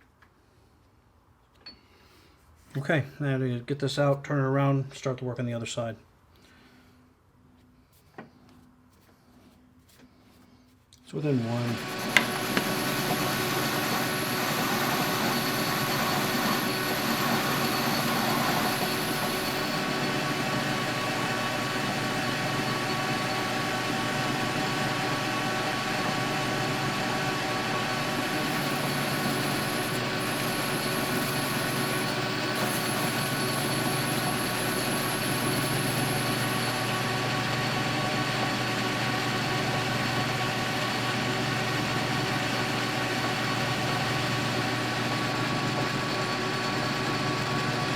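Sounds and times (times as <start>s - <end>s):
faint high whine: 11.3s - 23.5s
metal lathe humming: 11.4s - 47.9s.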